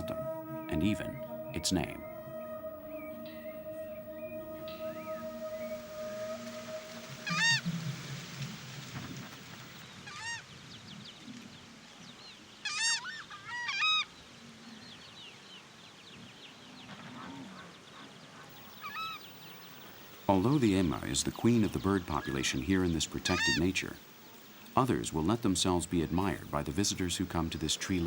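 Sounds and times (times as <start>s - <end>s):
faint flock calls: 0.0s - 10.4s, 17.0s - 28.0s
birds honking calls: 0.0s - 10.5s, 18.5s - 28.0s.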